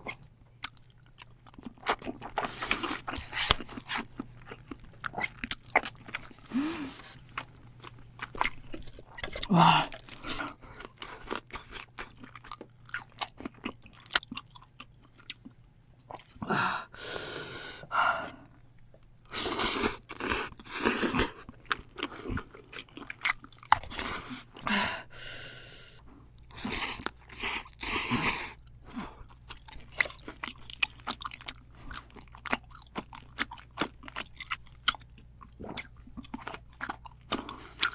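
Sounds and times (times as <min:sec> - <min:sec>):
chewing and crunching food: 0:00.0 - 0:16.4, 0:18.4 - 0:24.8, 0:26.0 - 0:37.9.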